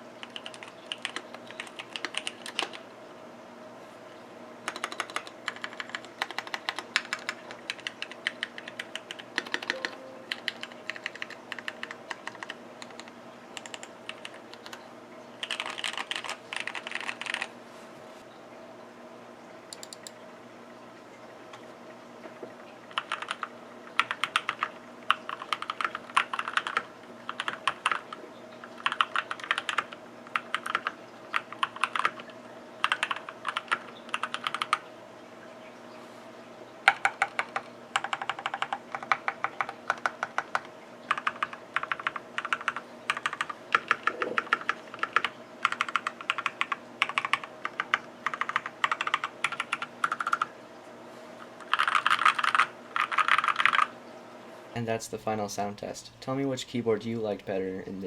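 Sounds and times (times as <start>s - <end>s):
typing on mechanical keyboard: 0.2s - 2.8s, 4.7s - 14.8s, 15.4s - 17.5s, 22.9s - 34.8s, 36.9s - 50.5s, 51.6s - 53.9s.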